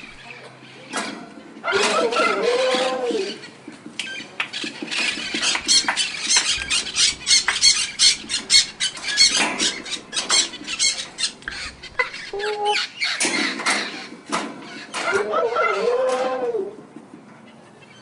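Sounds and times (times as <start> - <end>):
parrot squawking: 1.6 - 3.5, 4.1 - 16.5.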